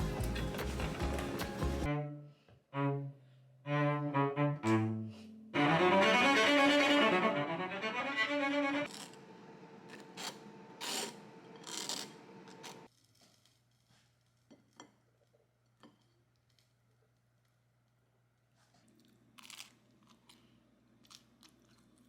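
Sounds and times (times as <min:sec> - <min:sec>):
cello bowed notes: 0:01.8 - 0:08.9.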